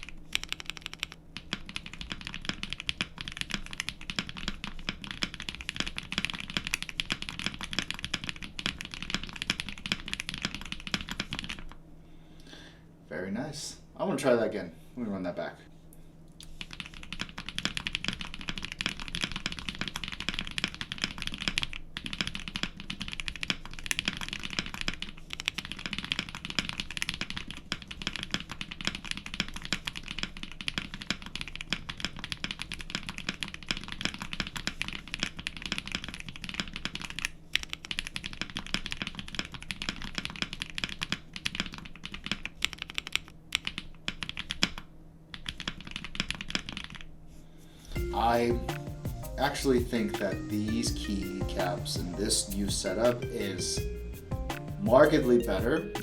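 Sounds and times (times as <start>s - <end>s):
mechanical keyboard typing: 0.0s - 11.8s, 16.5s - 47.1s.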